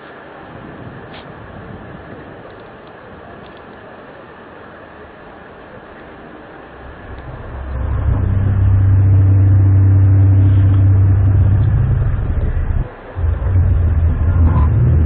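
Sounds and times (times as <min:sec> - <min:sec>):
low droning hum: 0:06.2 - 0:15.0.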